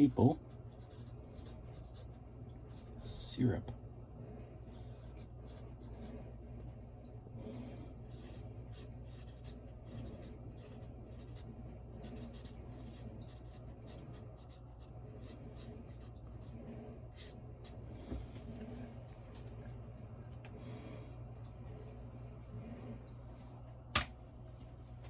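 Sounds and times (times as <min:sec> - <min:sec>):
pen scratching on paper: 0:00.0 - 0:03.0, 0:04.7 - 0:06.3, 0:08.0 - 0:17.8
faint low room hum: 0:00.0 - 0:25.0.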